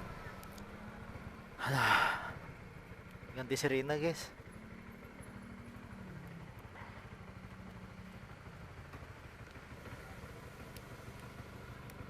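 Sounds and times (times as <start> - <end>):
faint road noise: 0.0 - 12.0
vehicle engine running: 0.0 - 12.0.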